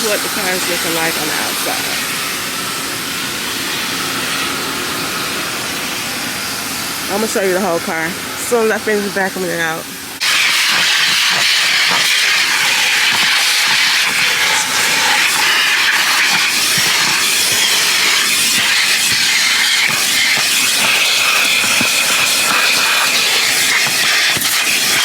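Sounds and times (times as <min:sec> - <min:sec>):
vacuum cleaner hose sucking air: 0:00.0 - 0:25.0.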